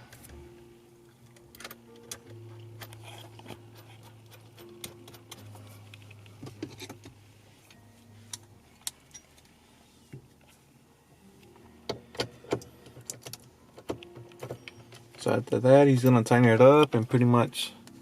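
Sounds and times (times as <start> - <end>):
low steady hum: 0.0 - 18.0
tools clicking and knocking: 1.3 - 5.6.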